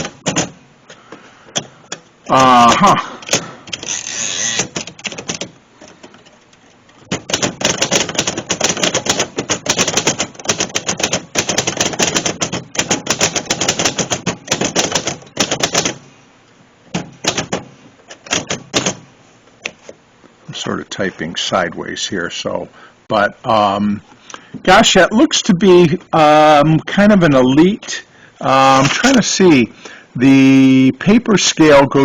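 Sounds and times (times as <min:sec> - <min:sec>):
typewriter keystroke clacks: 0:00.0 - 0:00.6, 0:02.3 - 0:06.0, 0:07.0 - 0:16.0, 0:16.9 - 0:19.0.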